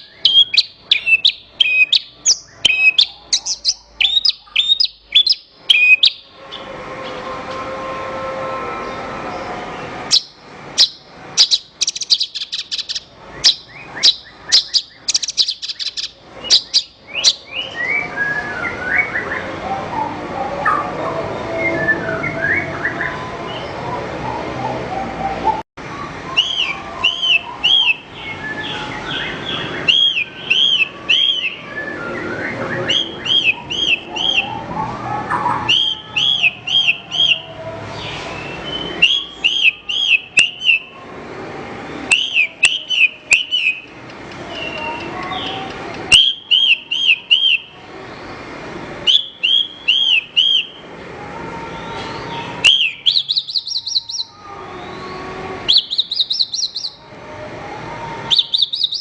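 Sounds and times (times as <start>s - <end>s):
bush lark singing whistled notes: 0.0s - 6.3s, 10.1s - 19.2s, 49.1s - 50.8s, 52.6s - 54.4s, 55.7s - 57.0s, 58.3s - 59.0s
soft bird twittering: 0.0s - 6.7s, 10.1s - 19.4s, 52.0s - 57.0s, 58.3s - 59.0s.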